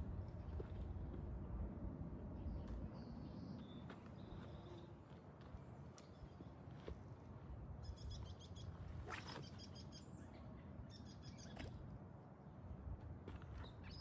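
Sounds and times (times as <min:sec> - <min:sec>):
low wind rumble: 0:00.0 - 0:03.8
songbird singing: 0:02.4 - 0:04.9.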